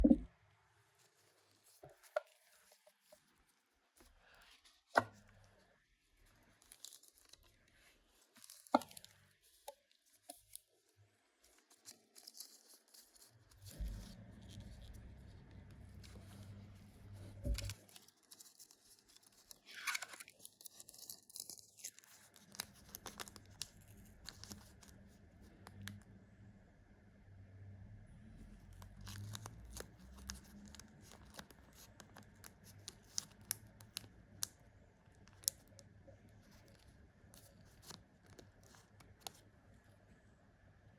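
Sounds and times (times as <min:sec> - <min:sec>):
wrapping tearing and crinkling: 0:06.4 - 0:10.7, 0:11.5 - 0:15.3, 0:15.9 - 0:25.1, 0:28.8 - 0:34.6.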